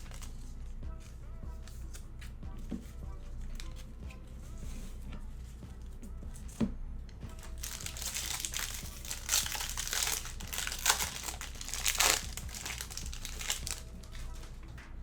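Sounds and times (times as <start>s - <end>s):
plastic wrapper crinkling: 7.3s - 14.5s.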